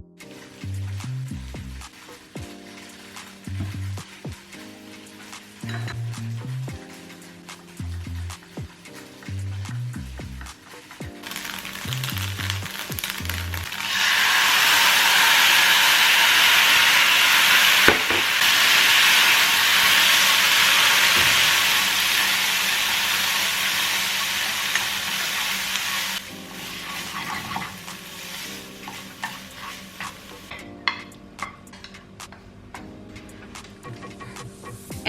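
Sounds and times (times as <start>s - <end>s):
stirring clicks: 0.3s - 13.8s
tofu sizzling in a pan: 0.3s - 30.5s
utensil clink: 5.6s - 6.3s.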